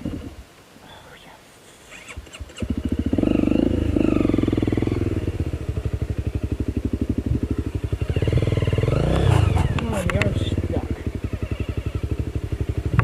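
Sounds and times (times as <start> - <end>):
motorcycle engine chugging: 2.0 - 13.0.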